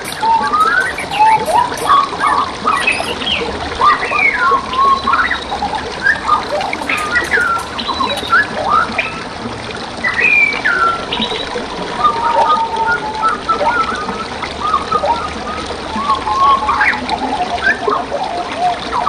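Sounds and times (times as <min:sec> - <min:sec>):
songbirds singing: 0:00.0 - 0:09.2
flowing water: 0:00.0 - 0:19.0.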